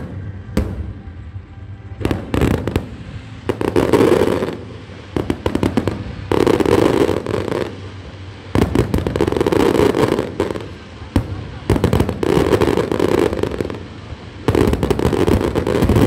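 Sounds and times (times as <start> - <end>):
fireworks bangs and crackling: 0.0 - 16.0.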